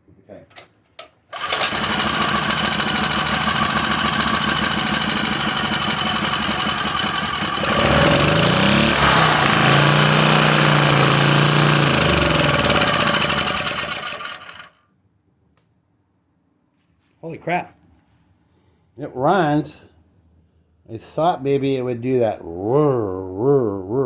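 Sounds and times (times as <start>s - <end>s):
generator engine running: 1.4s - 14.7s.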